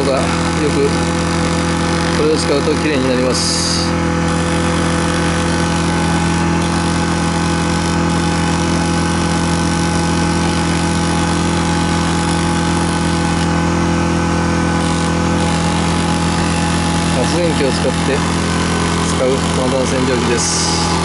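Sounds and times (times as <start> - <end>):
small generator engine running: 0.0 - 21.0.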